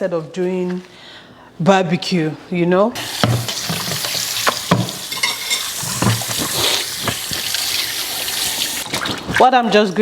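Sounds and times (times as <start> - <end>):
tap water running into sink: 3.0 - 9.4.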